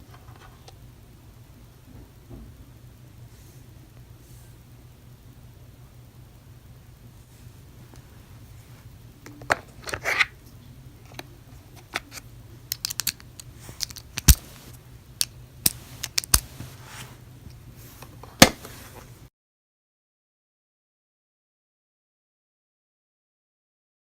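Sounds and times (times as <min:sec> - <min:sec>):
steady low hum: 0:00.0 - 0:19.3
small hard objects clicking: 0:12.7 - 0:14.5, 0:15.2 - 0:16.5.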